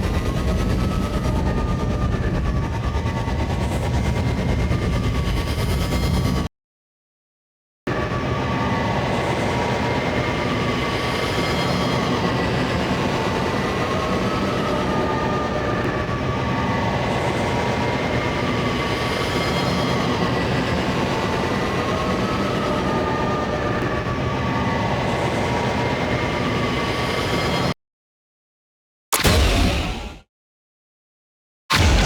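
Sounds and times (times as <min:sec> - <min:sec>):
droning engine whine: 0:00.0 - 0:06.5.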